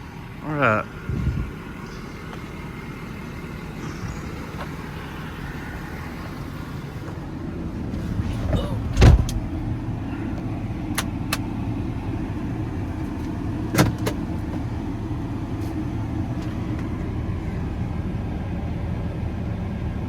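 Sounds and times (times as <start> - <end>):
diesel engine idling: 0.0 - 20.0.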